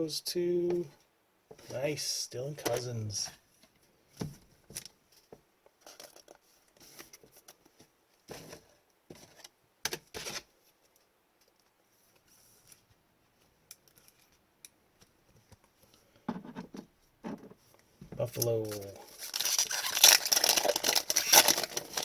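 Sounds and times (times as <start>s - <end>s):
trading cards rustling: 18.2s - 22.0s.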